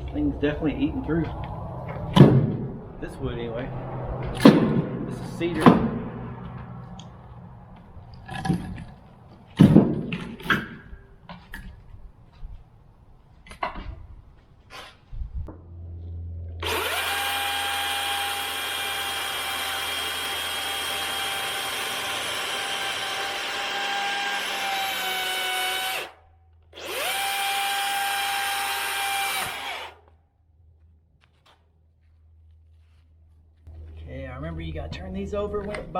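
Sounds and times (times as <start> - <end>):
knocks on logs: 5.6 - 6.1, 8.2 - 11.6
electric chainsaw whining: 16.6 - 30.1.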